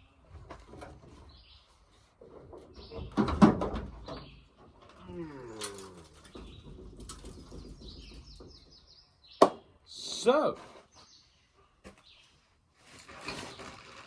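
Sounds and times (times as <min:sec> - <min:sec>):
small bird chirping: 0:04.0 - 0:09.9.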